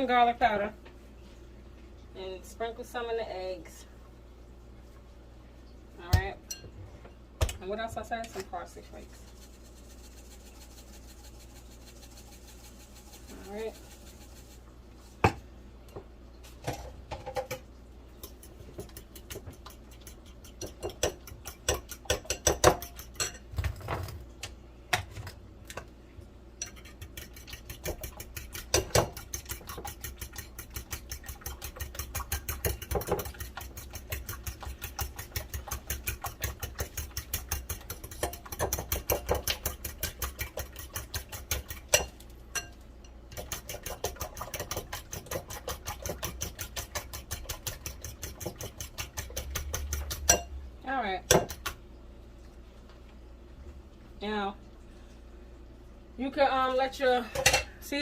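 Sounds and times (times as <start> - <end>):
fork beating eggs in bowl: 8.1 - 14.7, 18.2 - 23.5, 26.6 - 50.5.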